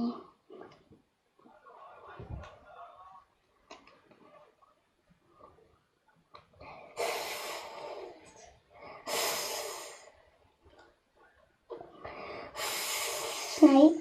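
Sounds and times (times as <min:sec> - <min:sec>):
person hissing through teeth: 0:07.0 - 0:08.1, 0:09.1 - 0:10.1, 0:12.5 - 0:13.7.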